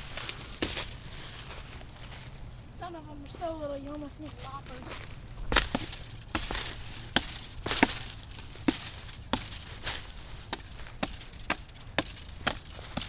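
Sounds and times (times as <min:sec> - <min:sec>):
axe chopping tree trunk: 0:05.4 - 0:13.0.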